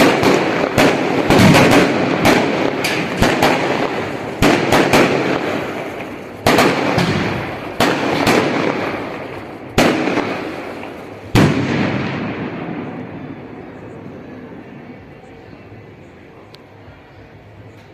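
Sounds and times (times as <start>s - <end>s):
sharp bangs with rolling rumble: 0.0s - 14.6s.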